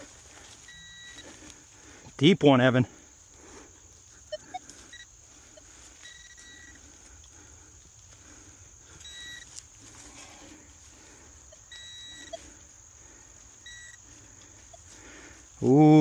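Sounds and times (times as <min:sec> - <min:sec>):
insects droning: 0:00.0 - 0:16.0
metal detector beeping: 0:00.6 - 0:01.5, 0:04.2 - 0:06.9, 0:08.9 - 0:09.7, 0:11.4 - 0:12.6, 0:13.6 - 0:14.9.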